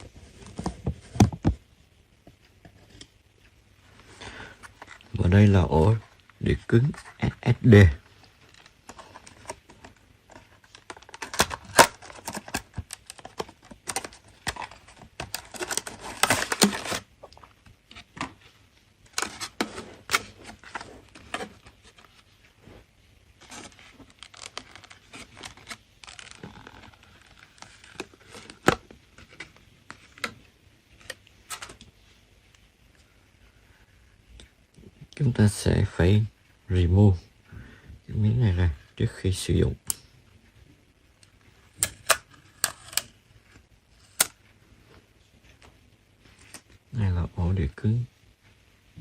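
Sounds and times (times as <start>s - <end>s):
packaging clicks and crinkling: 8.4s - 18.4s, 19.0s - 22.2s, 23.4s - 30.4s
packaging tearing: 10.6s - 17.5s, 23.4s - 28.7s.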